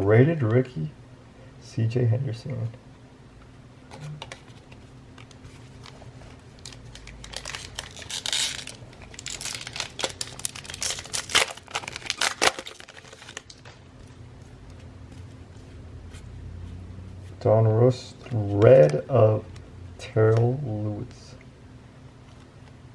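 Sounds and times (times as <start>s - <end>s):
wrapper tearing and crinkling: 5.7s - 13.8s.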